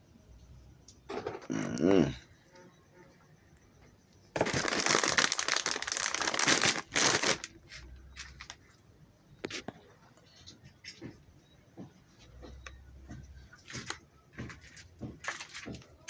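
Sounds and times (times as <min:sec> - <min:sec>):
plastic chip packets crinkling: 0:04.4 - 0:08.7.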